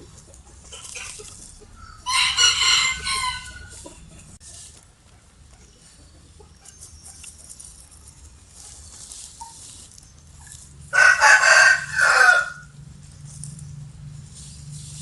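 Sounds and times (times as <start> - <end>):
rooster crowing: 1.9 - 3.8, 10.9 - 12.7.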